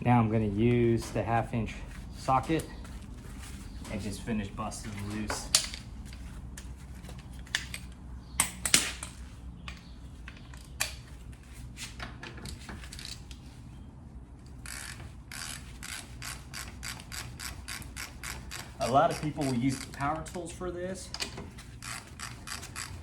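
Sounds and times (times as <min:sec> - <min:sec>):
hand ratchet clicking: 0:14.6 - 0:20.4, 0:21.8 - 0:23.0.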